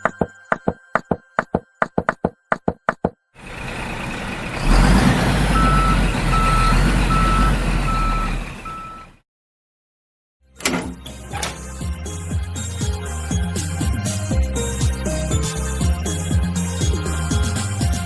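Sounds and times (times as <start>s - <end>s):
reversing alarm beeps: 5.6s - 9.1s.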